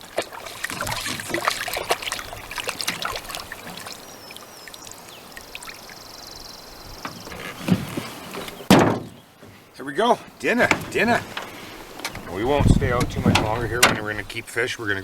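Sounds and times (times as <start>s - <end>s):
water splashing and trickling: 0.0s - 15.0s
small knocks: 7.0s - 9.6s.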